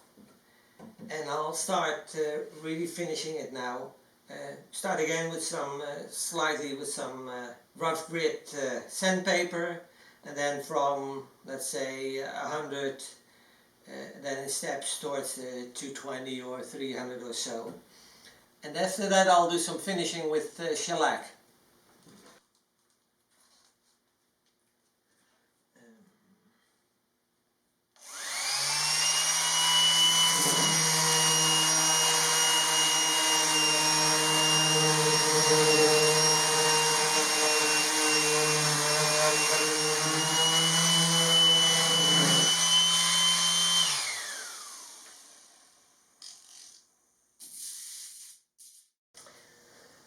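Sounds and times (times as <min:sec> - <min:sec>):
orbital sander running: 0:28.0 - 0:45.6
sander sanding wood: 0:28.0 - 0:45.6.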